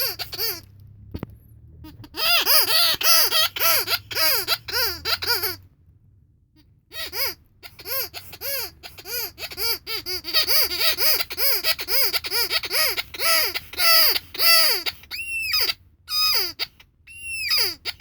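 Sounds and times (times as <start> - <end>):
rubber squeaky toy squeaking: 0.0 - 5.7, 6.6 - 18.0.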